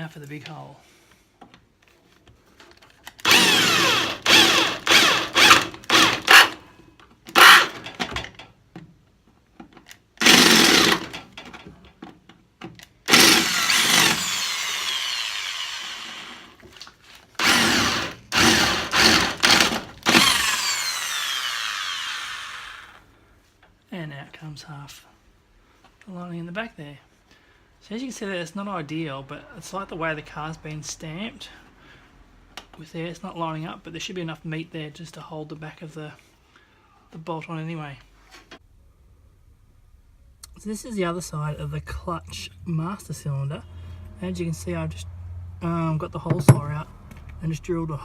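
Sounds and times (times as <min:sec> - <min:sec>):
power drill whining: 0:03.2 - 0:06.6, 0:07.3 - 0:08.2, 0:10.2 - 0:11.2, 0:13.1 - 0:16.6, 0:17.4 - 0:23.1.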